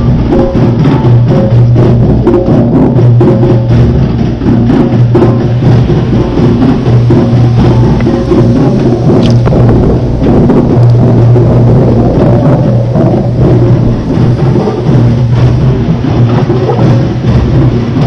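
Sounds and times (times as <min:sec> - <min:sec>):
driving bass line: 0:00.0 - 0:18.0
drum and wood-block beat: 0:00.0 - 0:18.0.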